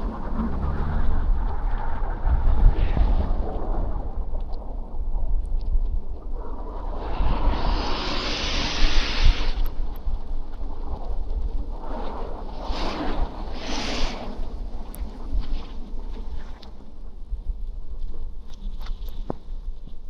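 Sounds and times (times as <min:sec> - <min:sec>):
wind buffeting microphone: 0:00.0 - 0:20.0
tyres hissing through wet snow: 0:06.9 - 0:10.0, 0:12.5 - 0:15.2.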